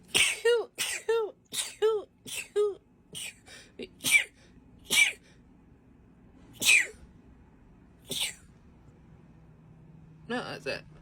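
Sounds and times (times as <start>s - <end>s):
woman sneezing: 0.1s - 5.2s, 6.6s - 7.0s, 8.1s - 8.4s.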